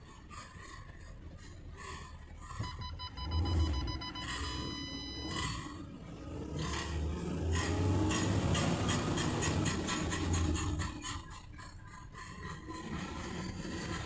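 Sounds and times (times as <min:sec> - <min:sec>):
low engine rumble: 0:00.0 - 0:14.0
high ringing tone: 0:02.6 - 0:05.8.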